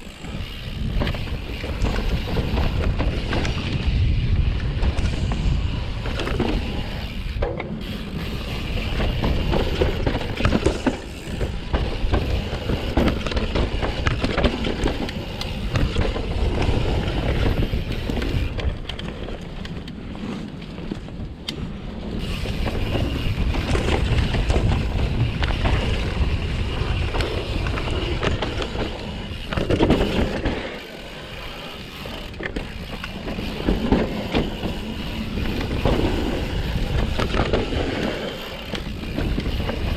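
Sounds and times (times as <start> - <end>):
wind noise on microphone: 0.0 - 20.3, 20.9 - 30.5
bike clattering over bumps: 0.0 - 39.9
bike tyres rolling on dirt: 0.0 - 39.9.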